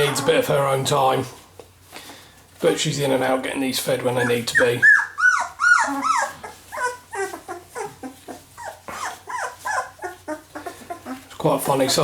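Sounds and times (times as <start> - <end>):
puppies whimpering: 0.0 - 0.7, 4.0 - 12.0.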